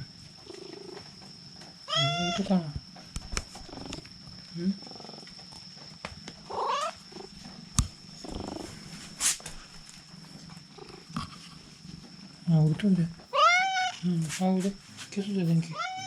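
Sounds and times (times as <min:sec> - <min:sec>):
cat meowing: 0:01.9 - 0:02.4, 0:06.5 - 0:07.0, 0:13.3 - 0:14.0, 0:15.7 - 0:16.0.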